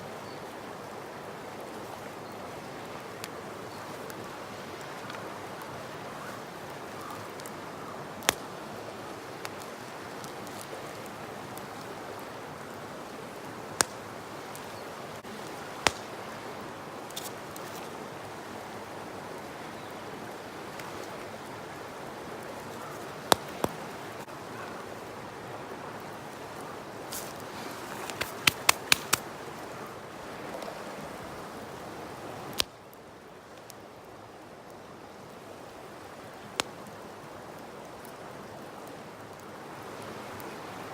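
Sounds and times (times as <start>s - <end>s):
river flowing: 0.0s - 40.9s
sharp short clicks: 28.0s - 29.2s.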